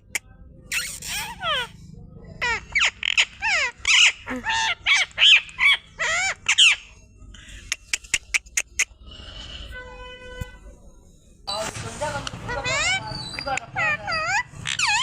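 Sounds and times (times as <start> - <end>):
parrot calls: 0.0 - 1.8, 2.4 - 6.9, 12.5 - 15.0.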